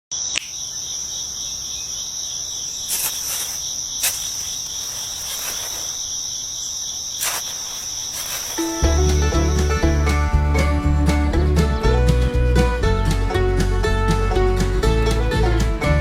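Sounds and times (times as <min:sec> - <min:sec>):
high-pitched insect chorus: 0:00.1 - 0:09.8.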